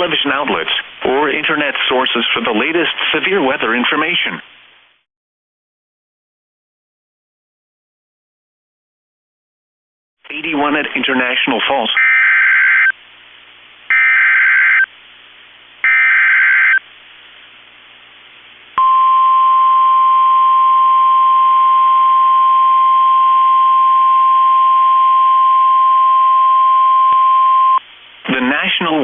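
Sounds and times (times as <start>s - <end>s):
steady high alarm tone: 13.9s - 14.9s, 15.8s - 16.8s.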